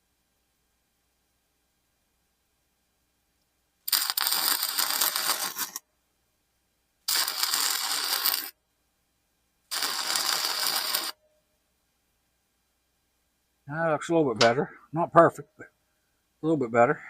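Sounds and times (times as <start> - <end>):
welder arc crackling: 3.8 - 5.8, 7.1 - 8.6, 9.7 - 11.2.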